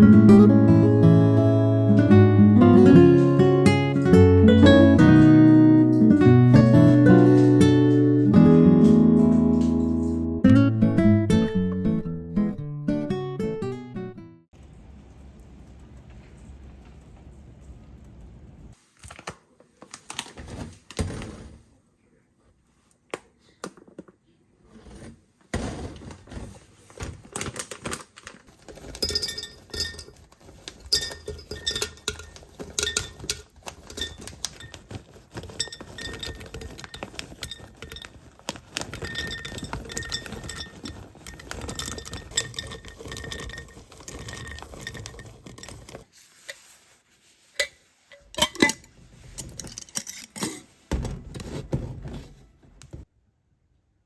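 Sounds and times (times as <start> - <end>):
dishes clinking and knocking: 28.7 - 46.0, 47.6 - 52.3.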